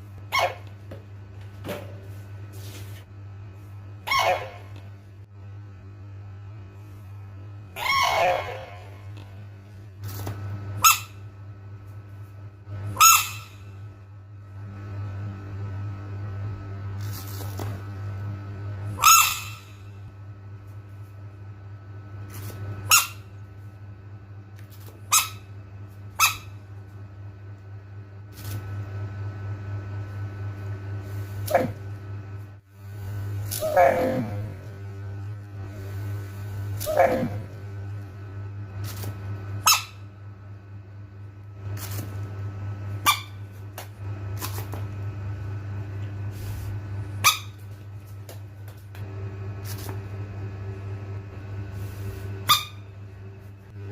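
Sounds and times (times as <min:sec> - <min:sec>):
steady low hum: 0:00.0 - 0:53.9
frog squeaky calls: 0:07.8 - 0:08.9, 0:13.0 - 0:13.6, 0:19.0 - 0:19.8
short sharp squeaks: 0:13.0 - 0:13.7.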